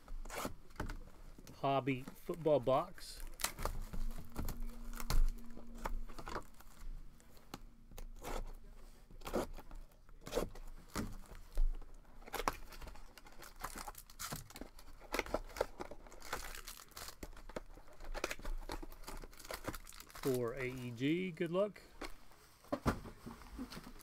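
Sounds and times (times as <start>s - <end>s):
plastic wrapping torn and crinkled: 3.1s - 8.6s, 9.2s - 20.9s.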